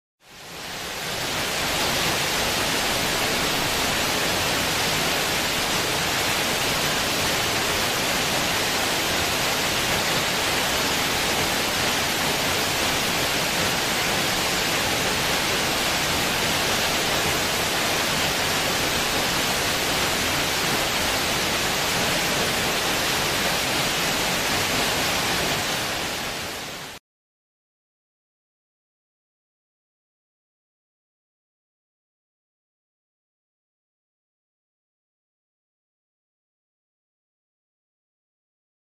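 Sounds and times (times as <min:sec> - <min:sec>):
waterfall rushing: 0:00.3 - 0:27.0.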